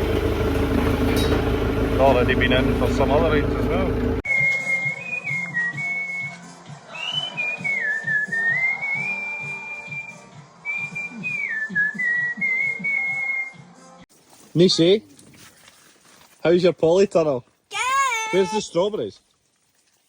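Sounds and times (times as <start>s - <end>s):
person whistling a tune: 4.3s - 13.8s.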